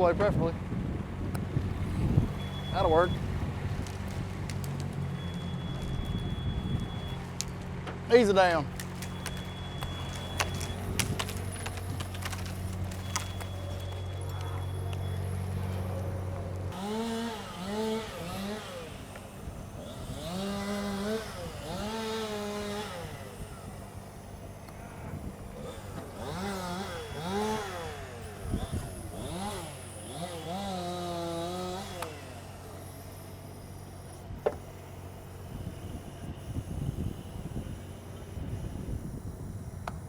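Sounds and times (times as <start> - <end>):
low engine drone: 0.0 - 40.0
chainsaw revving: 16.7 - 35.0.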